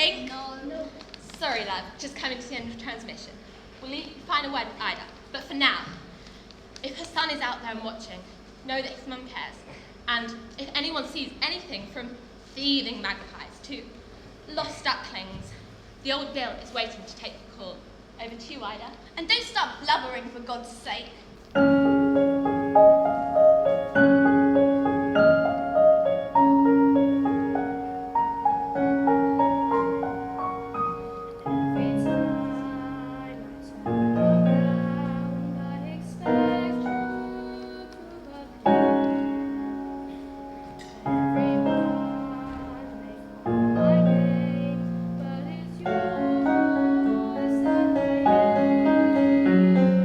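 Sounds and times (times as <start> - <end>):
slow gentle piano: 21.5 - 50.0.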